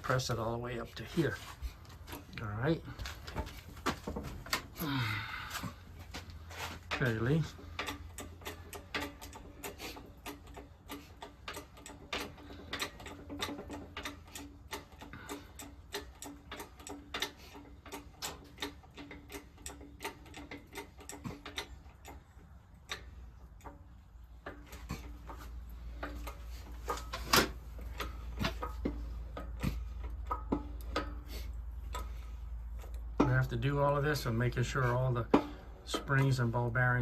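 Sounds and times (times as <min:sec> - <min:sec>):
rapid clicking of shop press: 0:06.9 - 0:22.8, 0:23.8 - 0:32.2.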